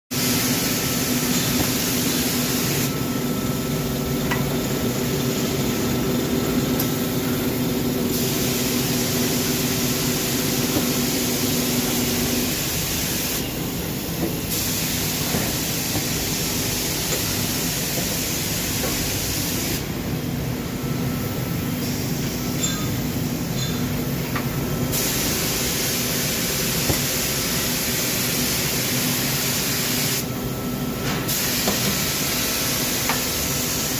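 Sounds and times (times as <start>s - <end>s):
spray hiss: 8.1s - 13.4s, 24.9s - 30.2s.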